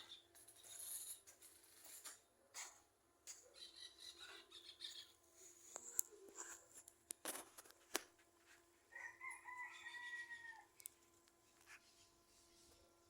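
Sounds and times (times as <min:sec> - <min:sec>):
faint rooster crowing: 0:08.8 - 0:11.0.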